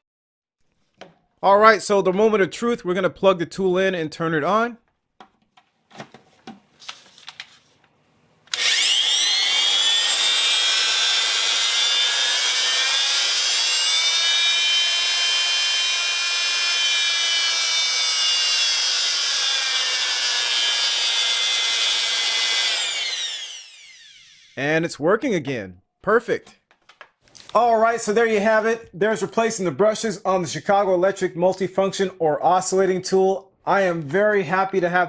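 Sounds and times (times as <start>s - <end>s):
oscillating multi-tool whining: 8.5s - 24.6s.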